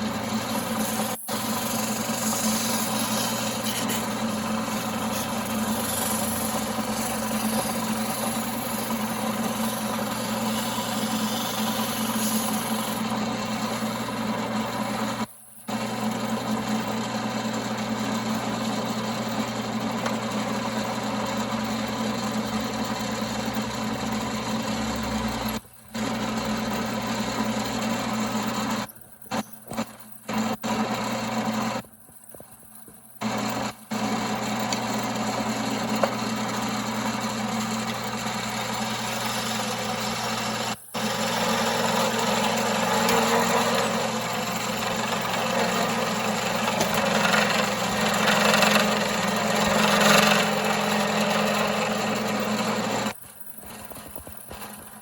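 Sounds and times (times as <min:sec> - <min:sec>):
wood lathe humming: 0:00.0 - 0:28.9, 0:29.6 - 0:31.8, 0:33.2 - 0:55.0.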